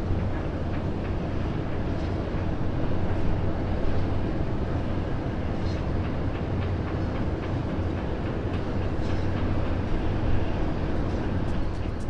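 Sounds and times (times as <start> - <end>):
distant city hum and rumble: 0.0 - 12.0.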